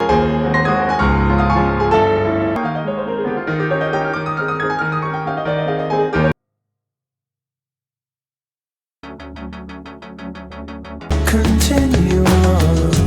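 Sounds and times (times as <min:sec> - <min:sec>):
piano music: 0:00.0 - 0:06.4.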